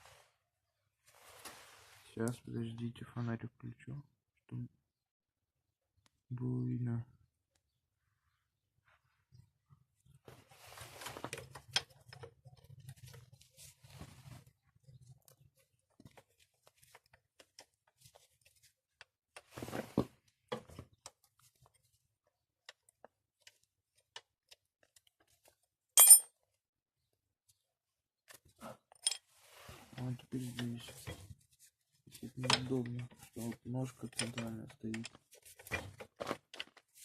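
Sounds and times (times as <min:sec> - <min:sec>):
rustling and knocking of tools: 0:10.2 - 0:26.6, 0:28.3 - 0:37.0.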